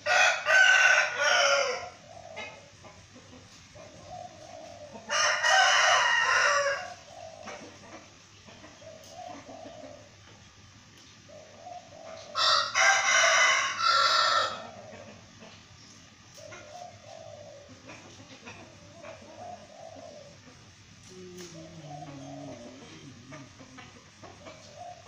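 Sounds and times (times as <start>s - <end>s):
rooster crowing: 0.0s - 2.0s, 5.1s - 7.0s, 12.3s - 14.8s
chicken clucking: 0.0s - 25.0s.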